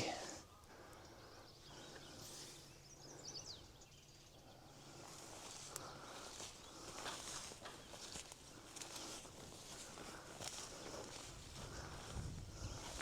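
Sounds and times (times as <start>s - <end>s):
bird chirps: 0.5s - 5.2s
footsteps through grass: 4.6s - 13.0s.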